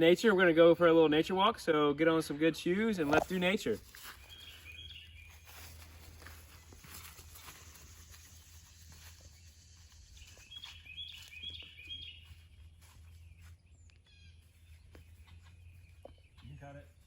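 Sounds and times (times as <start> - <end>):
songbird chirping: 0.0 - 17.0.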